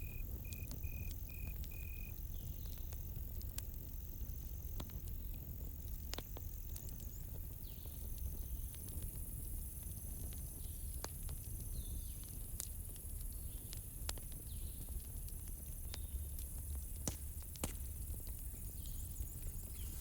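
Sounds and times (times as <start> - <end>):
cricket trilling: 0.0 - 2.5
campfire crackling and popping: 0.0 - 20.0.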